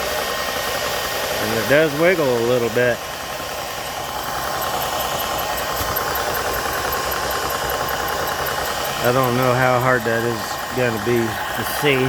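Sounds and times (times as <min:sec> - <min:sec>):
air compressor running: 0:00.0 - 0:12.0
faint high ticking: 0:03.8 - 0:12.0.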